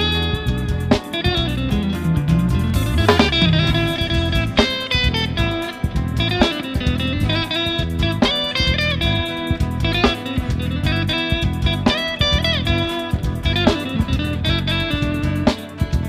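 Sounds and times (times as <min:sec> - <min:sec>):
bass: 0:00.0 - 0:16.0
guitar playing melody: 0:00.0 - 0:16.0
steady rhythmic beat: 0:00.0 - 0:16.0.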